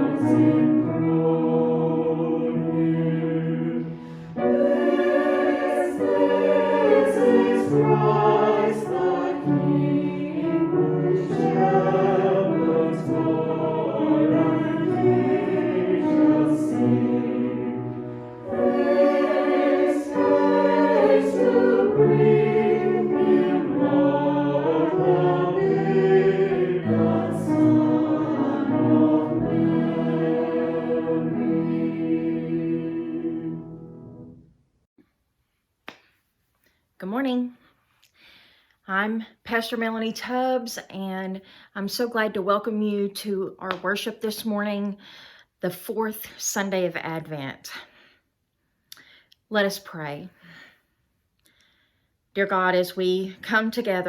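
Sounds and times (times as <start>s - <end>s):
choir singing: 0.0s - 34.5s.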